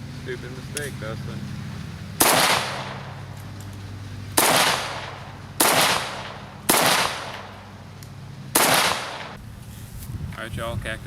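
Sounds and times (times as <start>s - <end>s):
rifle shots with echo: 2.2s - 3.2s, 4.4s - 7.7s, 8.5s - 9.4s.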